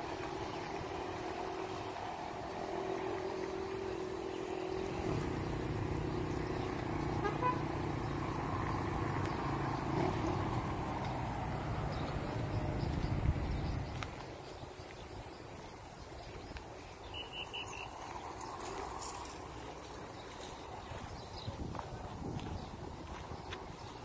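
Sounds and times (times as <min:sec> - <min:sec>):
vehicle passing: 0:00.0 - 0:14.2, 0:17.2 - 0:21.2.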